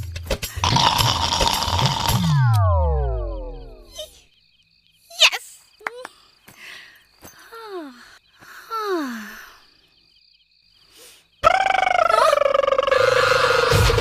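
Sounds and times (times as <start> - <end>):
music: 0.0 - 2.9, 13.0 - 14.0
breathy snoring: 0.5 - 2.6.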